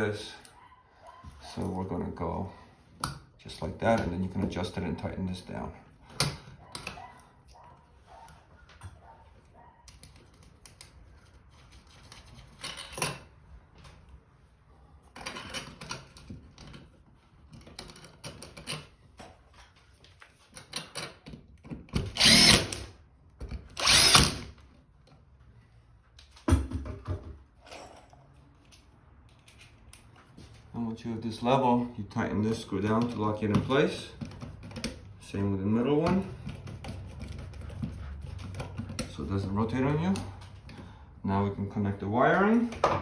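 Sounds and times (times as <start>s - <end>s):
cordless drill running: 22.1s - 22.9s, 23.8s - 24.5s.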